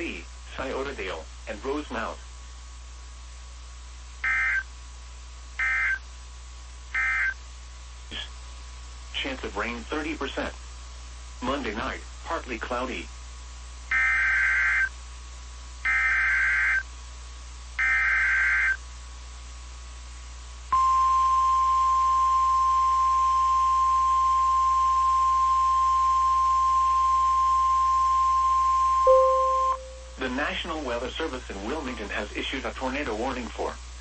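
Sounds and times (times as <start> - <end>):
steady warning alarm tone: 5.6 - 6.0, 24.3 - 30.2.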